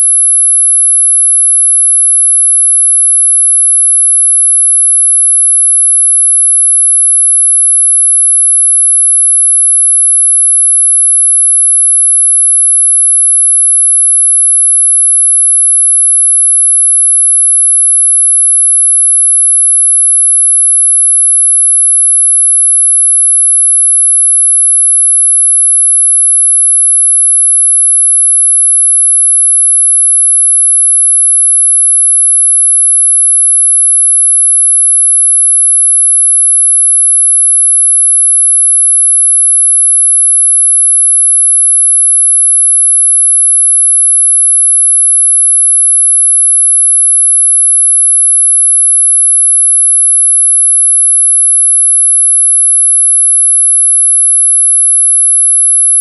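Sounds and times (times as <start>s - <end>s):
high-pitched sine tone: 0.0s - 56.0s.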